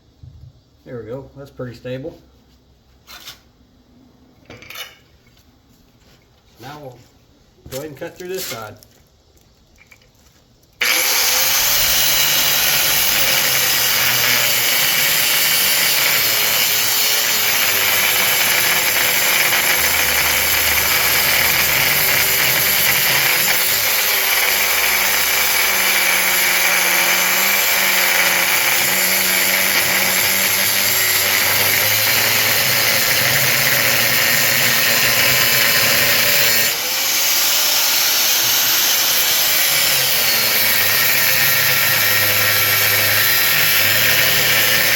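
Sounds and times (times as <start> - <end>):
power tool cutting metal: 10.8 - 44.9.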